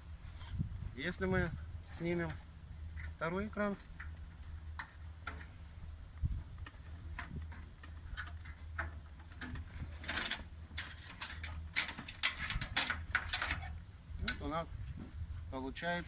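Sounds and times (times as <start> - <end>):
steady low hum: 0.0 - 16.0
metallic scraping and rattling: 6.3 - 14.6.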